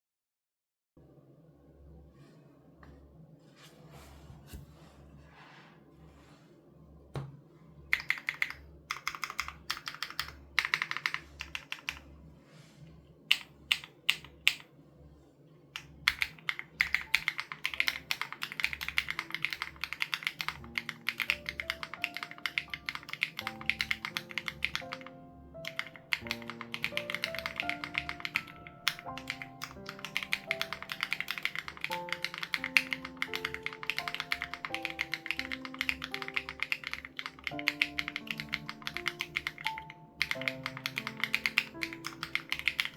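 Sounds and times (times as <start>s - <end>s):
mechanical keyboard typing: 7.9s - 12.1s, 13.3s - 14.7s, 15.8s - 42.9s
background music: 16.1s - 42.9s.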